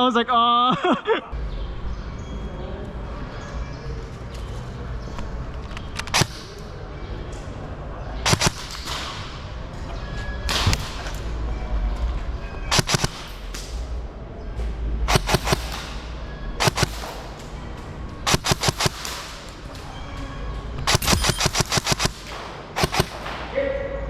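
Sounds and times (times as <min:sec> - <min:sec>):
airsoft guns firing bursts: 0:08.2 - 0:09.6, 0:12.7 - 0:13.6, 0:15.1 - 0:19.8, 0:20.9 - 0:23.6.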